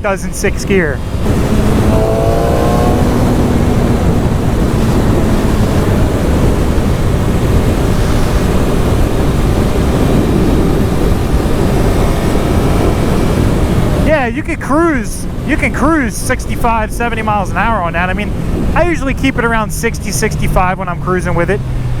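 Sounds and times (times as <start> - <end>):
faint motorcycle engine: 0.0 - 22.0
wind buffeting helmet microphone: 0.0 - 22.0.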